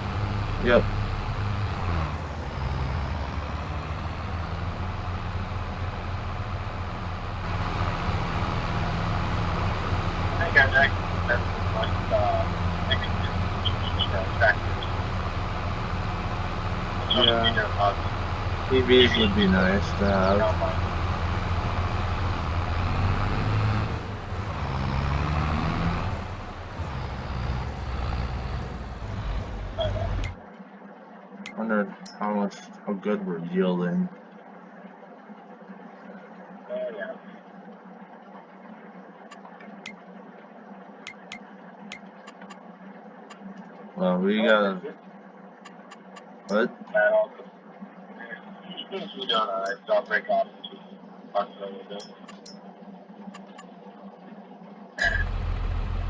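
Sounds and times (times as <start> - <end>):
combine harvester running: 0.0 - 30.4, 52.0 - 52.5, 55.0 - 56.0
diesel engine droning: 0.0 - 30.4, 41.1 - 41.4, 42.2 - 42.6, 45.6 - 46.7, 52.0 - 52.6, 53.2 - 53.7, 55.0 - 56.0.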